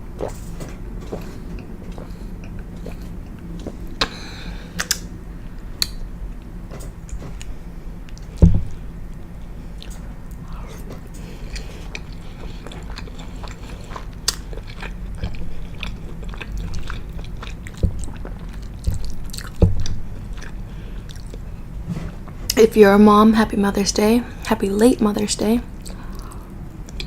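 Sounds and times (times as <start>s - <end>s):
person chewing pasta: 0.0s - 22.6s, 25.8s - 27.0s
loud low thumps: 8.4s - 8.8s.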